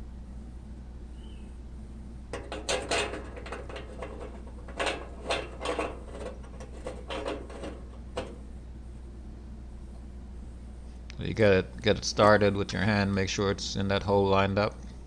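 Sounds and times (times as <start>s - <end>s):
steady low hum: 0.0s - 15.0s
metallic clatter of hardware: 2.3s - 8.6s.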